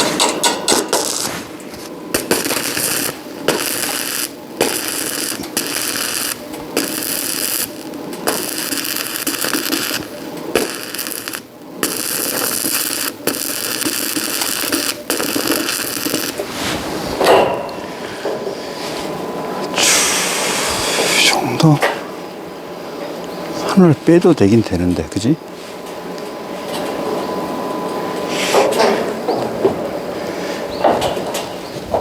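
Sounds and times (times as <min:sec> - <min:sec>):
arc welding crackling: 0:00.0 - 0:17.8.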